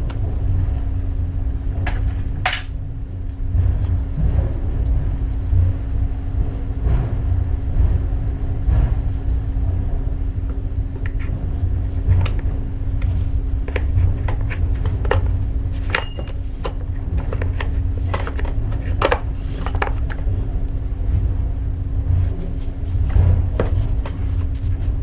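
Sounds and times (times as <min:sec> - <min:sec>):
low hum and rumble: 0:00.0 - 0:25.0
metal tools clinking: 0:15.9 - 0:16.4.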